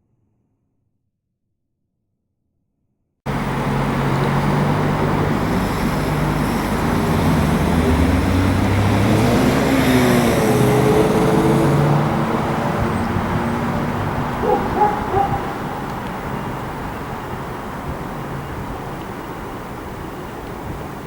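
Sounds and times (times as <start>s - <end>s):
freight train rumbling: 3.3s - 21.0s.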